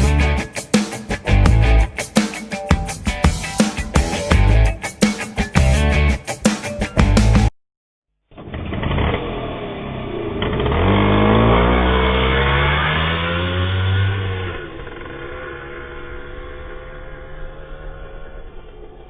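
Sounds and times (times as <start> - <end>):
auto rickshaw engine revving: 8.4 - 19.0.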